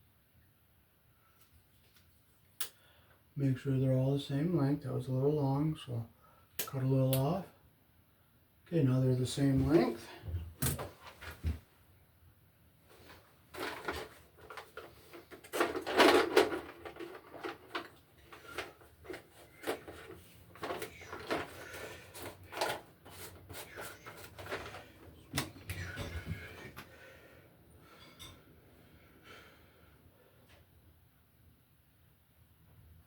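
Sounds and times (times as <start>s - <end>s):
hand tools and wires rattling: 13.5s - 26.8s.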